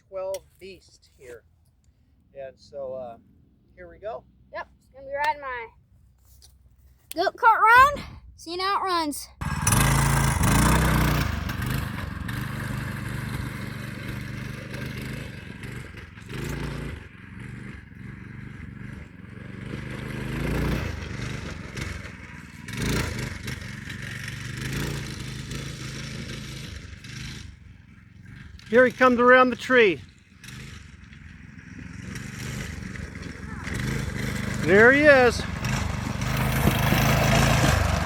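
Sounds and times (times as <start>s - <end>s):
go-kart engine revving: 9.4s - 38.0s.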